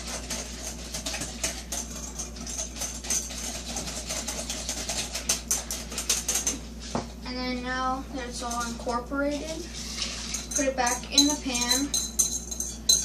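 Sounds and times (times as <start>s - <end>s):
whisk clicking against bowl: 0.0s - 6.6s.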